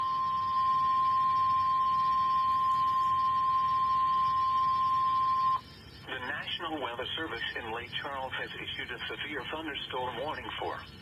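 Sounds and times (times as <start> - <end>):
steady high alarm tone: 0.0 - 5.8
faint radio hiss: 0.0 - 11.0.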